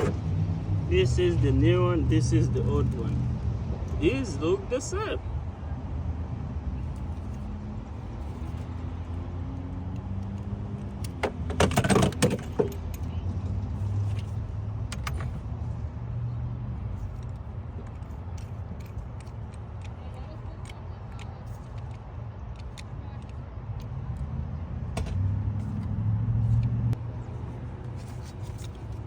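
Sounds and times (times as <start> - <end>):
metal tools clinking and rattling: 11.0 - 13.2.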